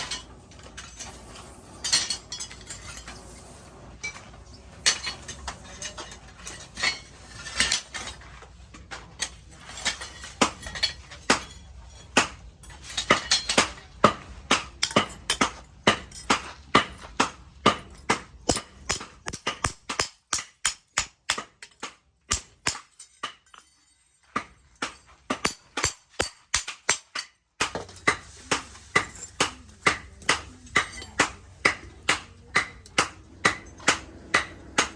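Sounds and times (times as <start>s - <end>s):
hammer striking steel: 12.2s - 34.9s.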